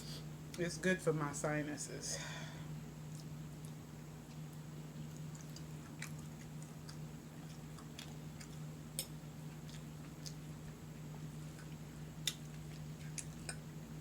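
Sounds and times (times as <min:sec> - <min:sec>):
steady low hum: 0:00.0 - 0:14.0
person chewing wetly: 0:03.1 - 0:13.7.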